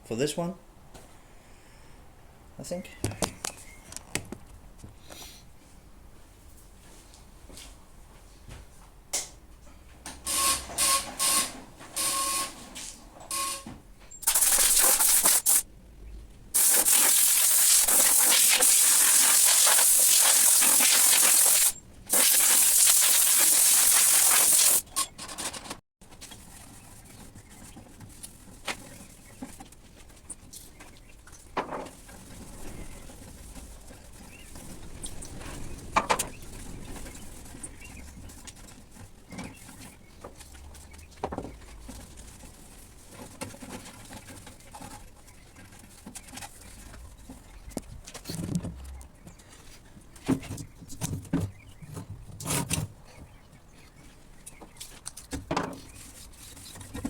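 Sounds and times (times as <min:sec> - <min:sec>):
compressed air blow gun hissing: 0:14.2 - 0:15.6, 0:16.6 - 0:24.8.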